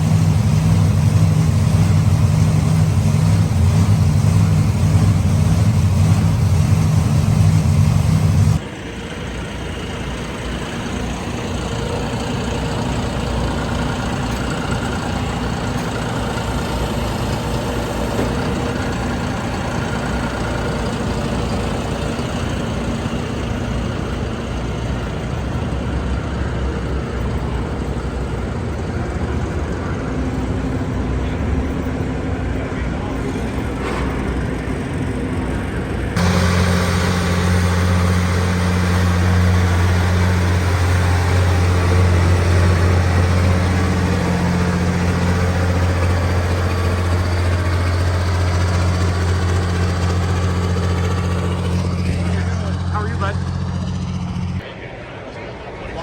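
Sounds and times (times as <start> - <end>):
tractor engine running under load: 0.0 - 54.9
arena noise: 50.7 - 56.0.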